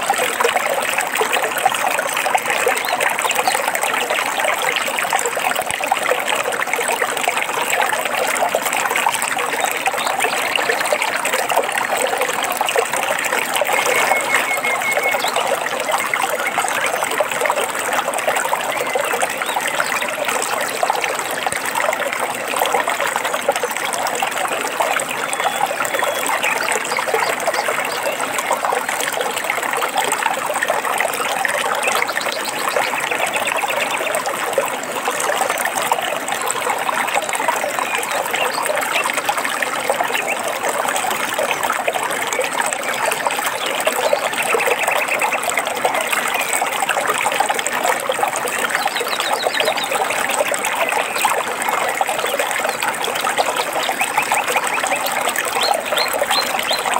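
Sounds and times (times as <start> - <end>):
stream babbling over stones: 0.0 - 56.9
faint bird trill: 13.6 - 15.6.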